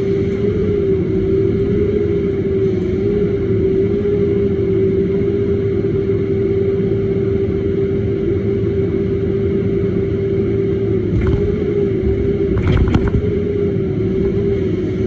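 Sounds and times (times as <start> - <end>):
mini excavator running: 11.1 - 14.6.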